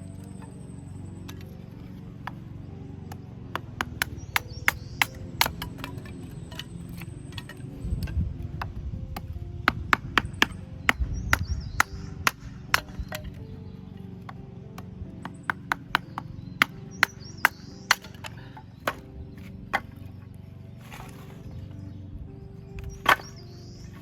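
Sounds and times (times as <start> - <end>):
firewood chopping strikes: 3.1 - 13.5, 14.2 - 20.2, 22.8 - 24.0.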